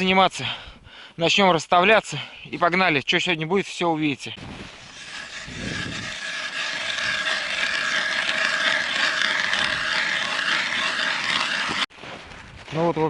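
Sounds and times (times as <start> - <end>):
ice auger motor whine: 4.9 - 11.9.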